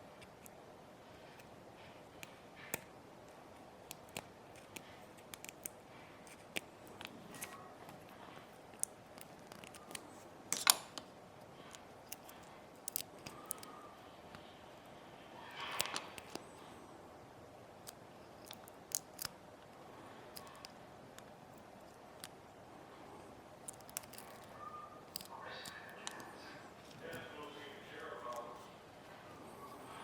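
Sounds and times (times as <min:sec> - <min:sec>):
steady low hiss: 0:00.0 - 0:30.0.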